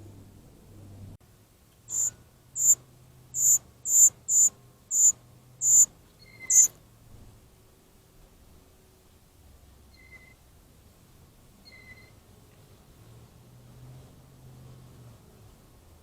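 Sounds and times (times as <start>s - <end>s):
young bird begging calls: 1.9s - 6.7s.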